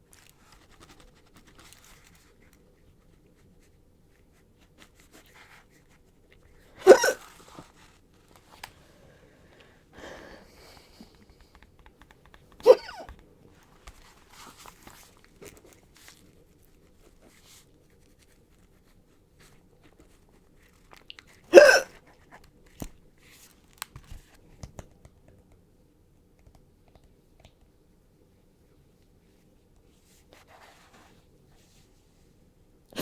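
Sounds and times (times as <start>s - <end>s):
faint clicks and rustles: 0.0s - 6.6s, 10.7s - 21.5s
woman hiccuping: 6.8s - 7.2s, 12.6s - 13.1s, 21.5s - 21.9s.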